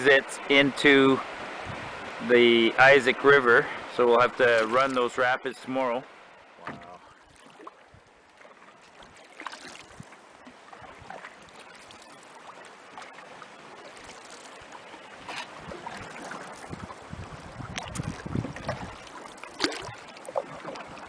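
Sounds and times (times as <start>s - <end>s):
paddle splashes and drips: 3.6s - 5.4s, 6.1s - 21.0s.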